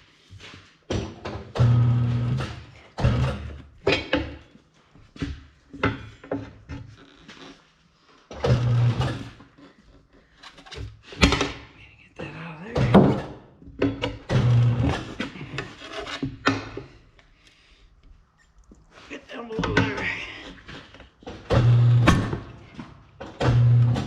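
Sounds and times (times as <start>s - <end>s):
rubber and tools scraping: 6.1s - 11.3s, 14.4s - 16.9s.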